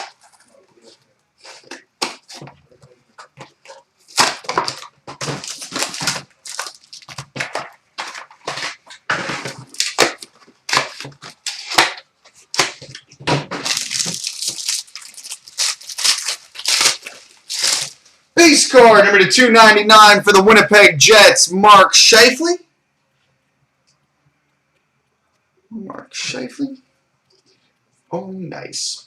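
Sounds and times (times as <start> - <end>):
plastic wrapping crinkling: 0.0 - 18.4.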